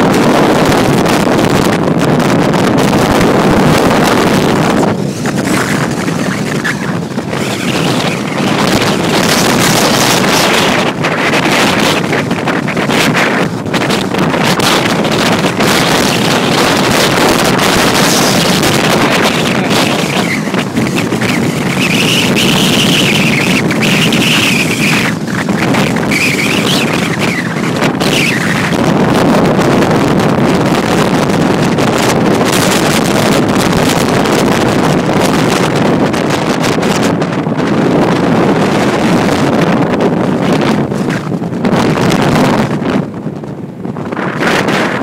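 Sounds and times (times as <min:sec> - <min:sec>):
wind gusts buffeting microphone: 0:00.0 - 0:45.0
high wavering wind whistle: 0:03.1 - 0:29.2.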